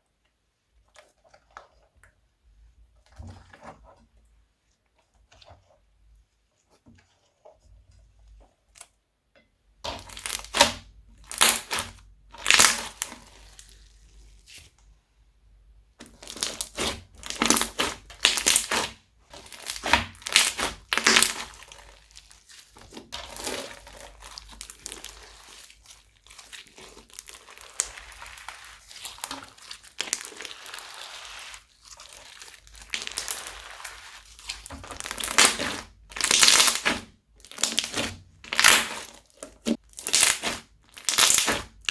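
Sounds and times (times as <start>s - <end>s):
crunchy slime squeezed by hand: 9.9s - 14.6s, 16.1s - 41.9s.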